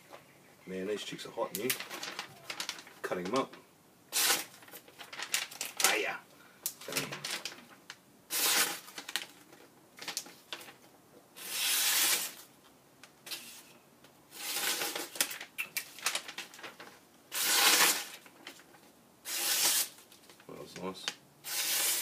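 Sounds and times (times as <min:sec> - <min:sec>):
paper rustling: 0:01.5 - 0:03.6, 0:04.2 - 0:06.1, 0:06.8 - 0:10.9, 0:14.4 - 0:21.7.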